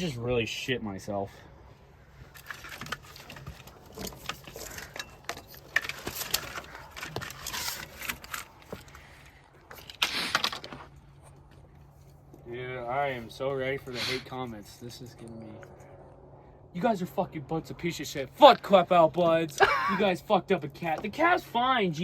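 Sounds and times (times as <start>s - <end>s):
metallic clattering and rattling: 2.2s - 9.0s.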